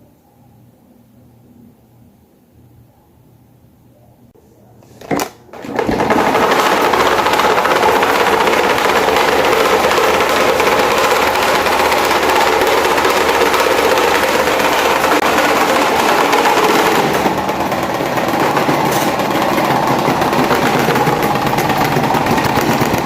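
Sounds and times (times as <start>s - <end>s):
electric fan rattling: 4.9s - 23.0s.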